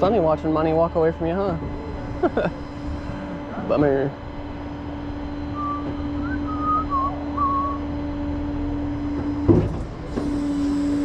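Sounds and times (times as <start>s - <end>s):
machinery humming: 0.0s - 11.0s
person whistling a tune: 5.5s - 7.8s.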